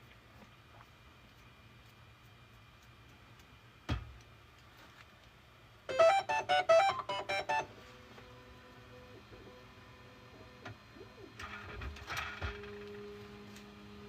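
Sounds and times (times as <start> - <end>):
faint motor hum: 0.0 - 14.0
printer motors beeping melody: 5.9 - 7.7.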